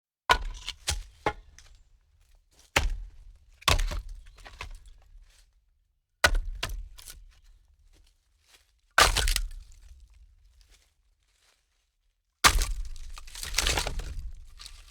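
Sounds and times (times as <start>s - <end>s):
log knocking on woodpile: 12.4s - 14.6s.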